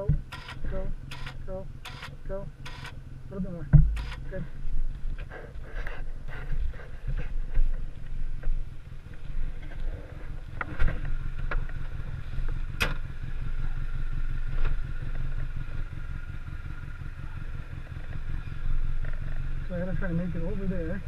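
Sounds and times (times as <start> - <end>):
vehicle engine running at low revs: 0.0 - 21.0
sharp knocks: 3.7 - 4.2.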